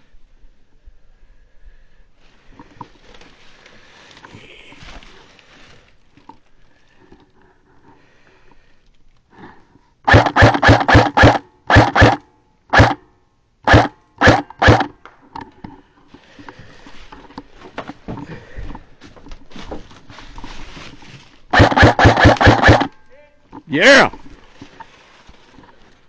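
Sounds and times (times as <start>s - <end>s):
airsoft gun single shots: 10.1s - 13.0s, 13.6s - 14.9s, 21.5s - 22.9s.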